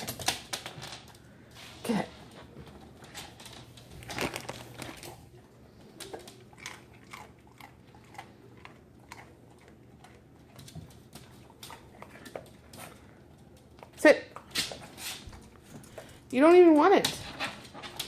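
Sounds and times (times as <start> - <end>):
dog crunching a treat: 2.7 - 16.3.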